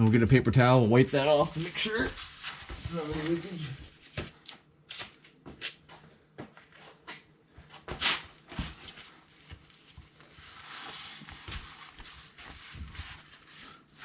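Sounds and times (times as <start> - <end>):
paper towel rustling: 1.0 - 4.2, 8.8 - 14.0.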